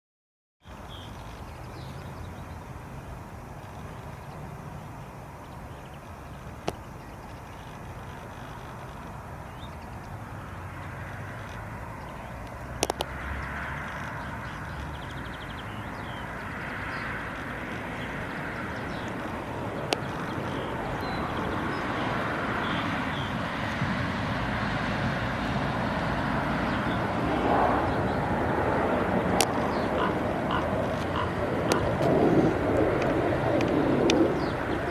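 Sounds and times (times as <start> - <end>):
steady rushing noise: 0.6 - 34.9
sharp clicks: 12.4 - 14.1.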